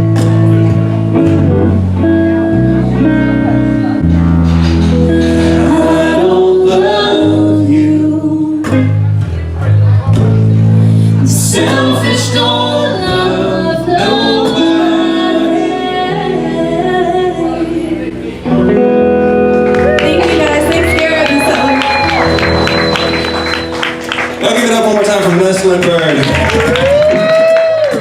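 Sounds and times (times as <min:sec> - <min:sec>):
guitar: 0:00.0 - 0:28.0
person singing: 0:05.4 - 0:09.0, 0:11.1 - 0:18.4.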